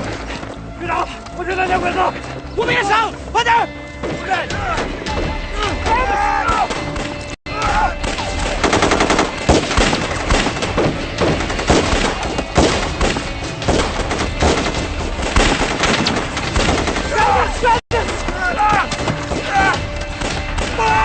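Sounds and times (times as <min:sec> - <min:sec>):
single gunshots: 0:08.0 - 0:17.2.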